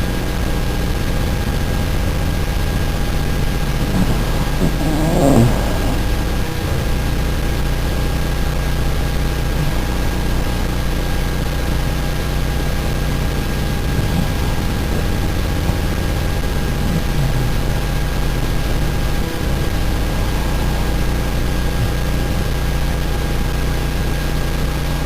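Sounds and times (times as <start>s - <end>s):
even hiss: 3.6s - 7.4s.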